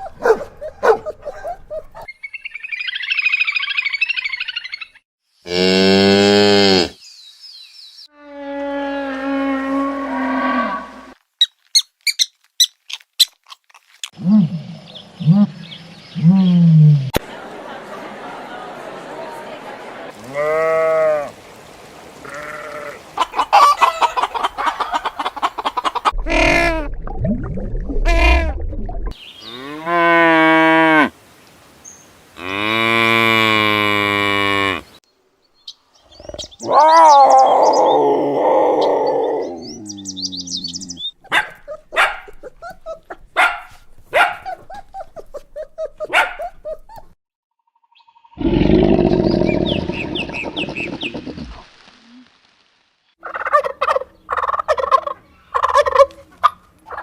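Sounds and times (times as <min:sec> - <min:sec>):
sheep and goats bleating: 0:20.2 - 0:21.3, 0:22.2 - 0:23.0.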